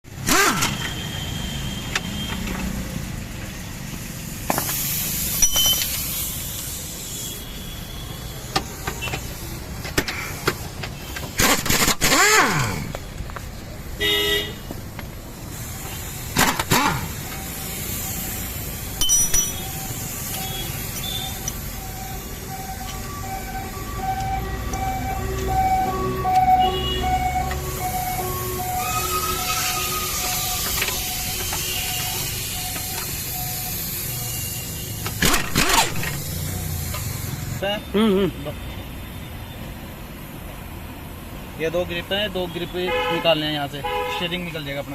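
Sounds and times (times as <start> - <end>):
hiss: 0.2 - 12.8, 15.3 - 26.0, 27.2 - 38.3
beeping tune: 17.3 - 34.3.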